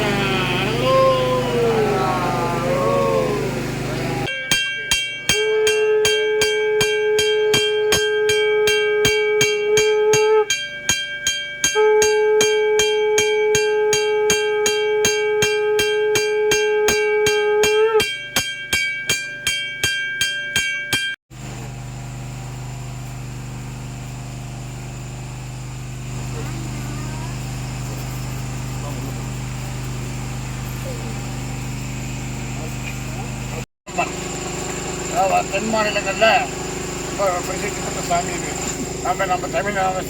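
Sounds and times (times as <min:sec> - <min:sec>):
conch blasts: 0:00.0 - 0:04.3
low steady hum: 0:00.0 - 0:04.3
temple bell ringing fast: 0:00.0 - 0:17.4, 0:26.0 - 0:40.0.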